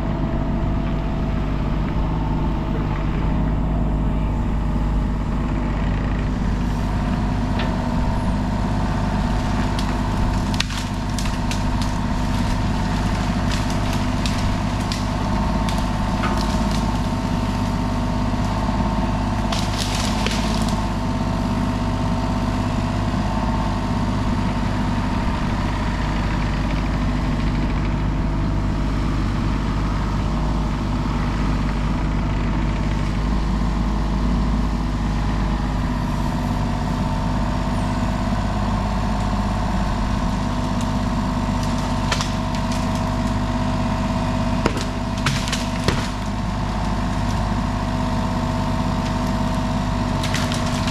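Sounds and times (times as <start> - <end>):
excavator diesel engine running: 0.0 - 50.9
wood cracking and breaking: 0.7 - 24.2, 35.6 - 50.9.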